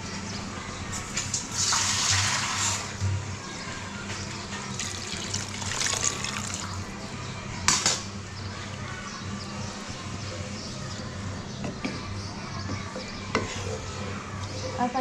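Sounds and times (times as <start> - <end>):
water pouring into a pan: 1.6 - 3.0, 4.7 - 6.9.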